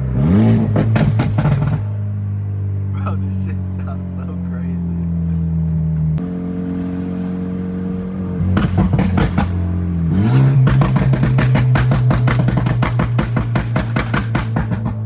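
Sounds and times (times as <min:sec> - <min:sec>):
sustained bass notes: 0:02.8 - 0:06.2.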